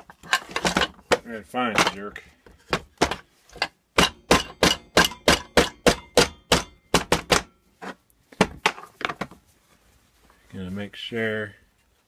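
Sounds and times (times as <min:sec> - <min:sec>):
hammer striking metal cover: 0:03.0 - 0:07.6.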